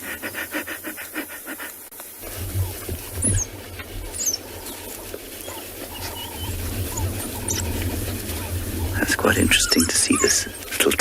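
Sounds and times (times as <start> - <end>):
wild dogs squeaking and whining: 0.0 - 11.0
low rumble: 2.3 - 11.0.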